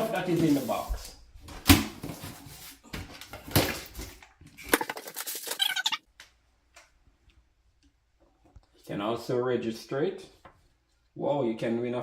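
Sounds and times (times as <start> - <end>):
cardboard and plastic rustling: 0.0 - 5.7.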